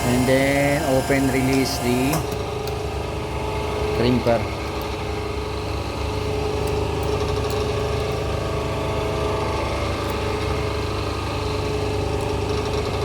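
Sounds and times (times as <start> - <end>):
steady whine: 0.0 - 6.5
machine motor and pump humming: 0.0 - 13.0.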